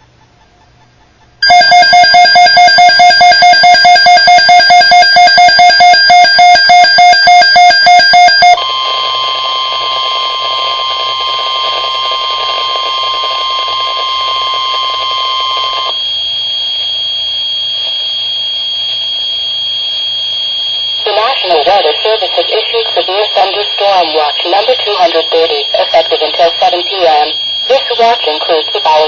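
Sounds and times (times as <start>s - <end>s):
rapid loud beeping: 1.4s - 16.1s, 20.6s - 29.0s
long steady alert tone: 1.4s - 29.0s.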